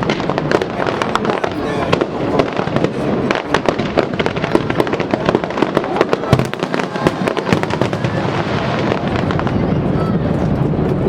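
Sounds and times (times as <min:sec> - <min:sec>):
deep firework boom: 0:00.0 - 0:11.0
fireworks cracks and bangs: 0:00.0 - 0:11.0.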